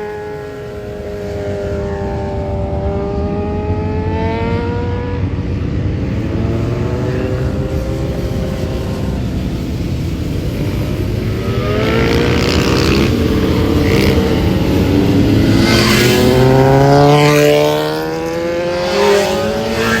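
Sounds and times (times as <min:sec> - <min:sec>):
vehicle engine accelerating: 0:00.0 - 0:20.0.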